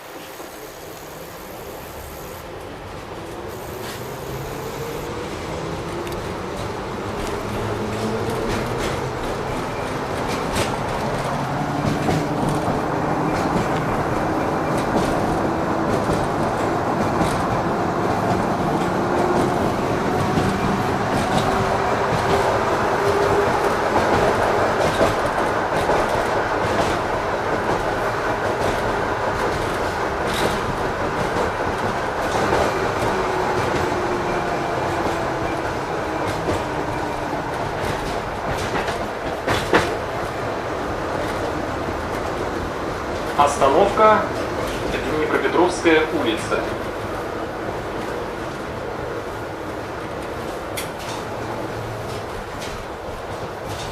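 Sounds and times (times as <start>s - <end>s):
tram wheels rumbling on rail: 0.0s - 53.9s.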